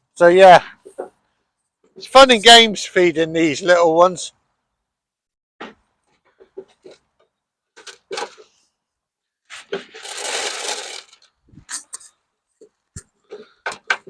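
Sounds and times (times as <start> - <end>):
sharp knocks and clatter: 12.6 - 14.0.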